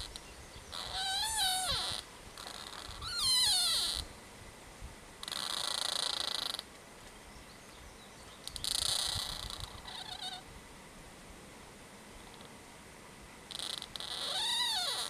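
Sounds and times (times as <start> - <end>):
trees creaking: 0.0 - 4.2, 5.2 - 7.2, 8.3 - 10.5, 12.1 - 12.7, 13.4 - 15.0.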